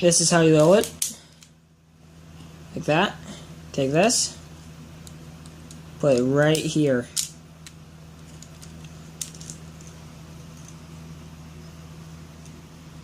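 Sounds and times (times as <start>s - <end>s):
steady low hum: 0.0s - 13.0s
plastic pieces clicking: 5.4s - 10.0s.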